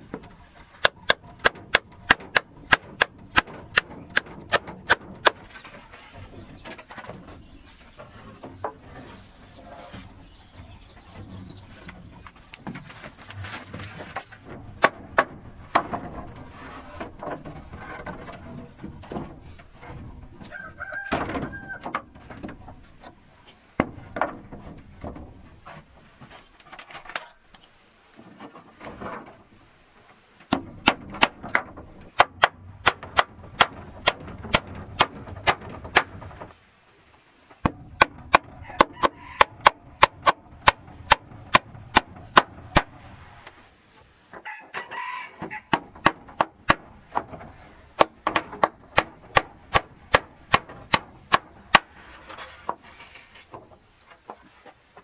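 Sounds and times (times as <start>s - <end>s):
chickens clucking: 0.0s - 14.4s, 17.6s - 23.6s, 38.0s - 50.7s
hammer striking wood: 0.8s - 5.5s, 30.5s - 36.2s, 37.6s - 43.0s, 45.7s - 47.4s, 48.0s - 52.0s.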